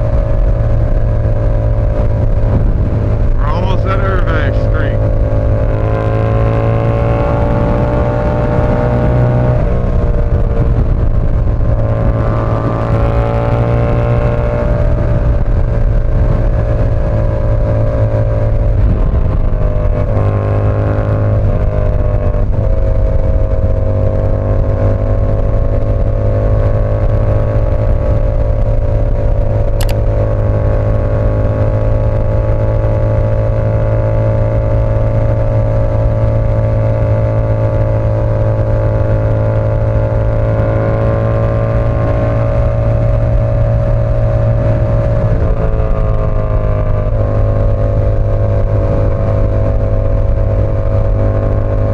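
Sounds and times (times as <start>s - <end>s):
motorcycle engine cruising: 0.0s - 51.9s.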